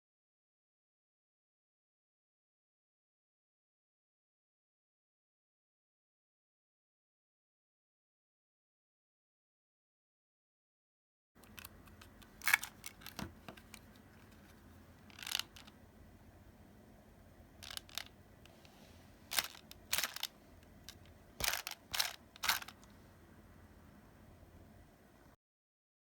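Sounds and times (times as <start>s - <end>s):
small hard parts clicking: 11.4s - 15.8s, 17.6s - 18.6s, 19.3s - 22.9s.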